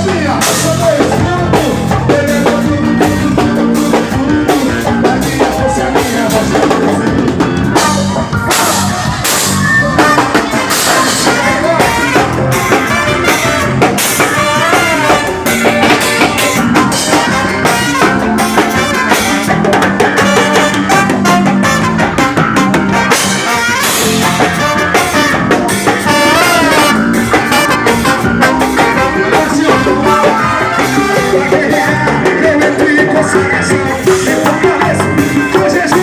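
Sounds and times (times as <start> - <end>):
drum kit playing a groove: 0.0 - 36.0
forro music: 0.0 - 36.0.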